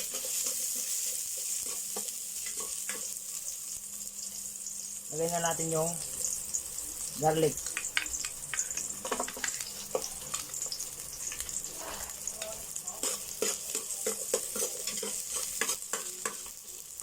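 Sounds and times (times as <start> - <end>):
food sizzling in hot oil: 0.0 - 17.0
utensil scraping a pot: 11.4 - 16.4.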